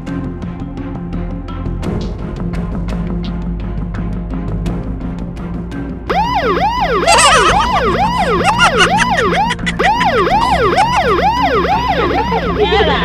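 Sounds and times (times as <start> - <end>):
electronic siren yelping: 6.1 - 13.0.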